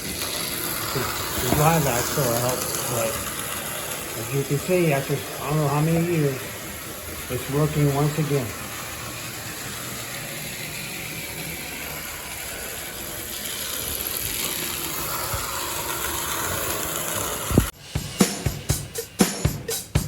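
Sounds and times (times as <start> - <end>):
toy train motor whirring: 0.0 - 17.8
music with drum beat: 17.7 - 20.0.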